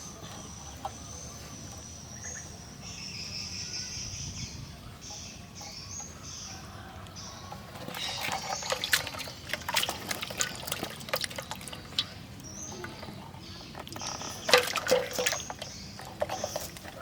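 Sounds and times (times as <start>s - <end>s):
water splashing and dripping: 7.7s - 17.0s.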